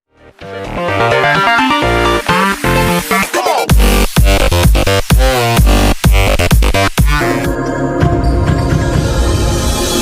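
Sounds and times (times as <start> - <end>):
electronic music with heavy bass: 0.2 - 10.0.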